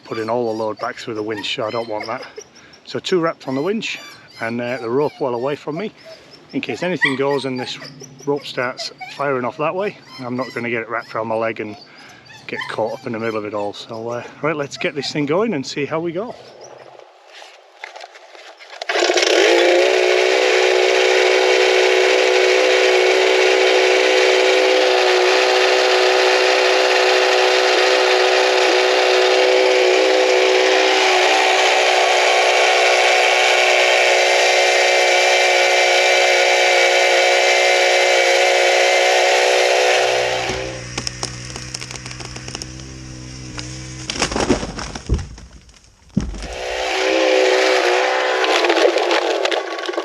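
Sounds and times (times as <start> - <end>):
small petrol engine running: 18.8 - 22.3, 40.0 - 44.2.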